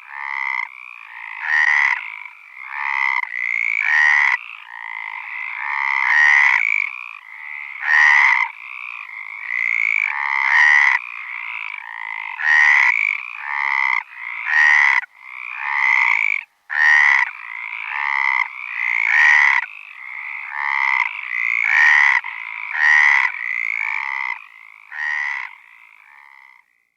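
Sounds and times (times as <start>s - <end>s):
frogs croaking: 0.0s - 26.9s
higher frog calling: 0.0s - 26.9s.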